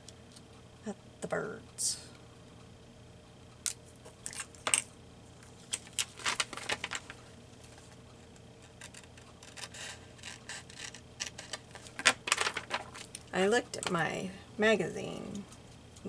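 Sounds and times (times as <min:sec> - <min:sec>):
paper rustling: 0:05.6 - 0:08.0, 0:08.6 - 0:13.3.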